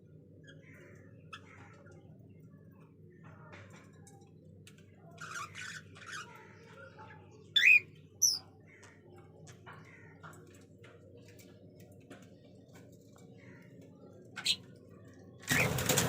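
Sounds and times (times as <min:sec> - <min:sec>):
birds chattering: 0:00.1 - 0:16.0
shrill bird squawks: 0:07.6 - 0:08.4.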